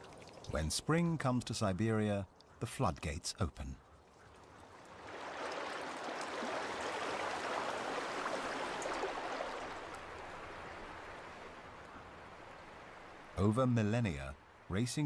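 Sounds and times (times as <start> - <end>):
fast-flowing river water roaring: 5.0 - 10.6.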